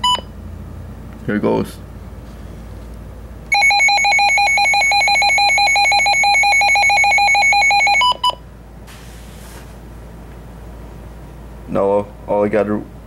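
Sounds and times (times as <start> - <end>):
rapidly pulsing electronic alarm tone: 3.5 - 8.4.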